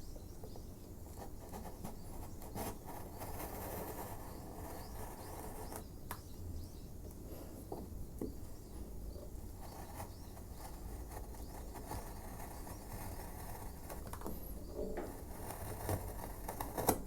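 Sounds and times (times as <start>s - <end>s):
chisel scraping through wood: 9.5s - 17.0s.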